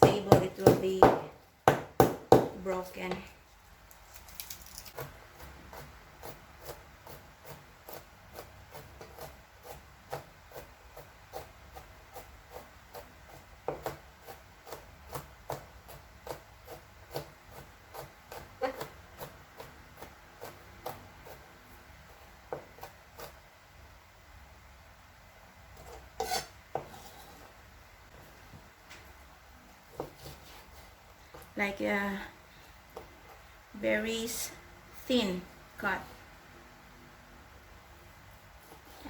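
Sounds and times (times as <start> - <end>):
knife rasping through meat: 26.2 - 27.2.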